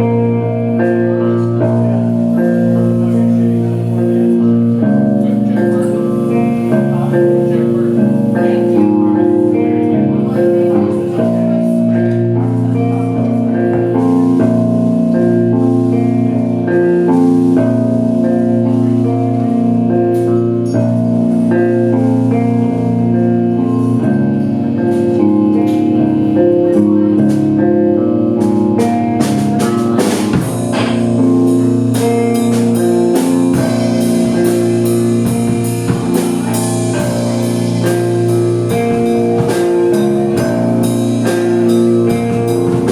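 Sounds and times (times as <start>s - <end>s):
guitar notes: 0.0s - 42.9s
drums and cymbals: 28.4s - 42.9s.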